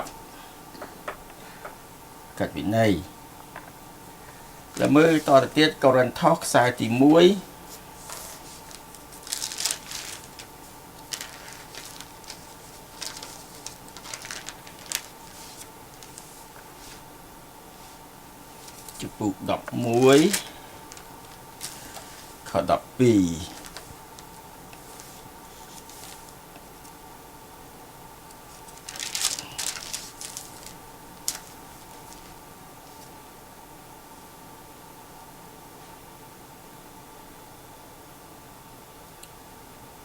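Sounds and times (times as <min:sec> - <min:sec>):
faint steady hum: 0:00.0 - 0:40.0
steady low hiss: 0:00.0 - 0:40.0
book pages turning: 0:07.7 - 0:17.0, 0:18.6 - 0:19.1, 0:23.5 - 0:26.4, 0:28.5 - 0:33.1.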